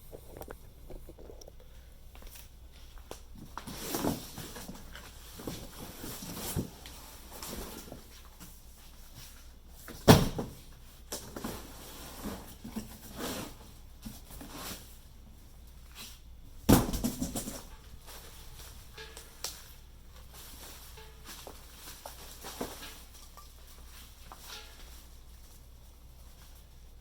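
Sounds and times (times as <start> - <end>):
cardboard rustling and scraping: 3.4 - 15.0, 17.0 - 26.7.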